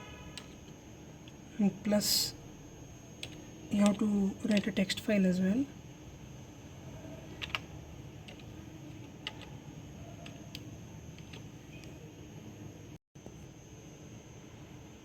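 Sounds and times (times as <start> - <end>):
keyboard keystrokes: 7.3 - 7.7, 8.3 - 9.5, 10.2 - 12.0.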